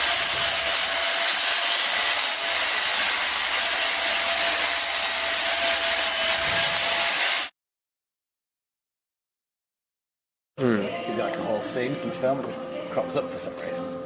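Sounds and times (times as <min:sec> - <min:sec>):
power tool running: 0:00.0 - 0:07.5.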